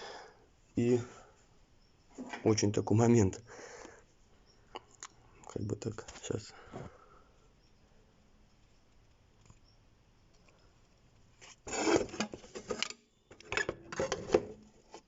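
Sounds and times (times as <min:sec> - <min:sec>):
rubbing and scraping: 0:11.3 - 0:13.0.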